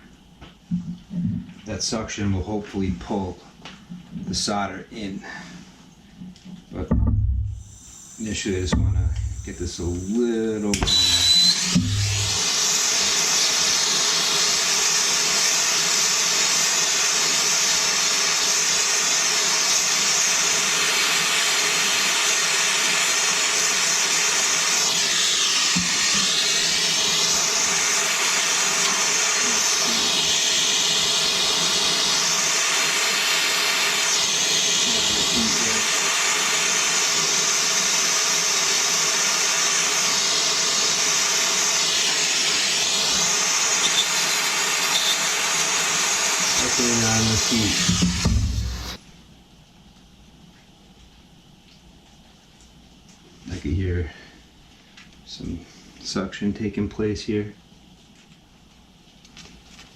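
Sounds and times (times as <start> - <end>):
gas torch flame hissing: 7.2 - 49.0.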